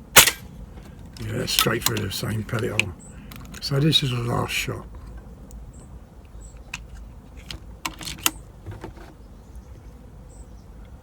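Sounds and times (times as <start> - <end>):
low steady hum: 0.0 - 7.3
air rifle handling clicks: 0.1 - 3.7, 6.7 - 8.4.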